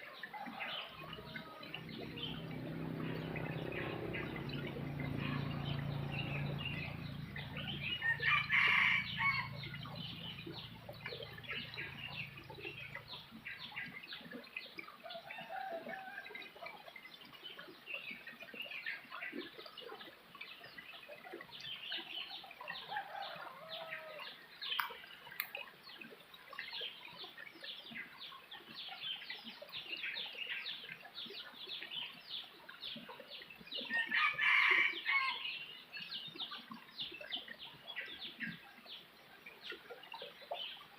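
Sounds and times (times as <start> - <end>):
small birds chirping: 0.0 - 15.0, 16.6 - 40.9
rooster crowing: 0.5 - 4.4, 5.3 - 10.0, 34.0 - 35.4
low hum: 1.1 - 13.0.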